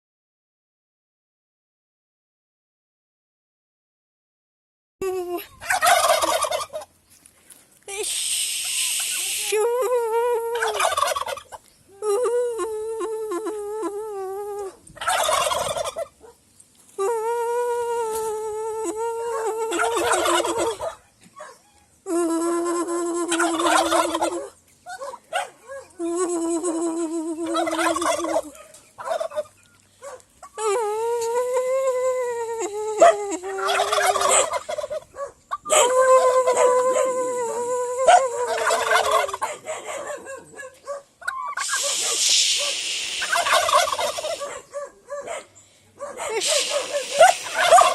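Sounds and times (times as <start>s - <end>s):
turkeys gobbling: 5.5s - 16.6s, 17.7s - 45.3s, 46.1s - 47.9s
person whistling wavering calls: 8.0s - 11.0s.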